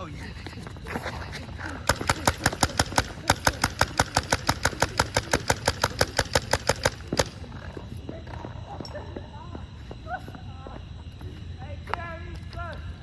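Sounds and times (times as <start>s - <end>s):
paintball gun firing rapidly: 1.8s - 7.4s.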